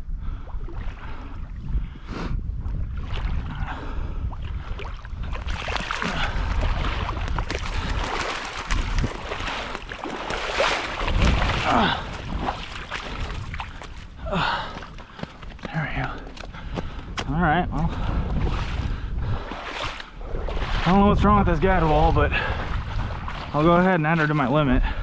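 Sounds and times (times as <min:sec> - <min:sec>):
steady low rumble: 0:00.0 - 0:23.8
water sloshing and splashing: 0:02.6 - 0:15.2, 0:18.0 - 0:21.1, 0:21.8 - 0:24.8.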